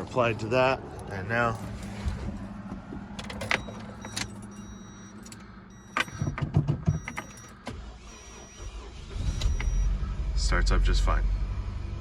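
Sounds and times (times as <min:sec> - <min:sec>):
keys rattling: 0:03.2 - 0:07.6.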